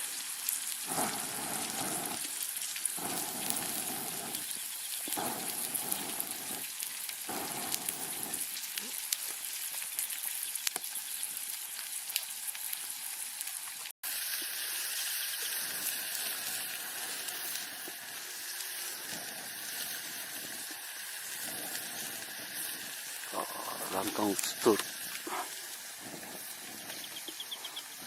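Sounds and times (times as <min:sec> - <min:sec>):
campfire pops and crackles: 0:00.0 - 0:28.0
steak sizzling on a grill: 0:00.0 - 0:28.0.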